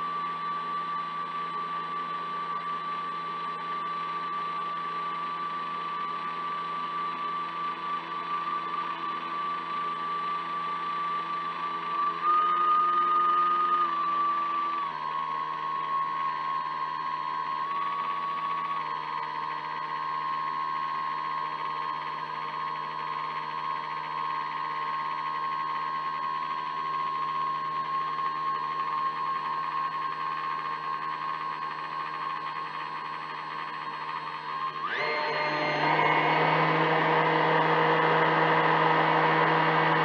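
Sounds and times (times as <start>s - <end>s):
model boat motor whining: 31.0s - 40.0s.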